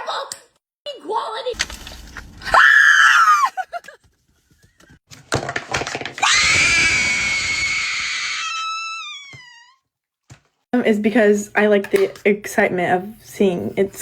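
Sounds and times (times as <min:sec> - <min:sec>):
high-pitched scream: 0:02.4 - 0:03.5, 0:06.2 - 0:09.8.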